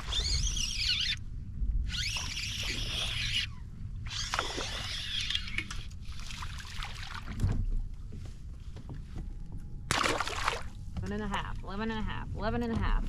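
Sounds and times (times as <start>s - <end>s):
thump against hull: 7.3s - 9.3s
water splashing beside kayak: 9.9s - 11.0s.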